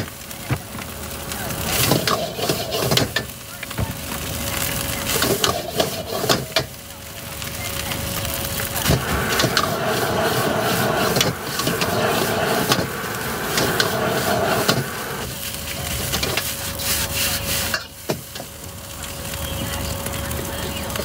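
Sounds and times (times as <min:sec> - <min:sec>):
metal utensils scraping in a wok: 0:01.7 - 0:03.2, 0:05.1 - 0:06.5.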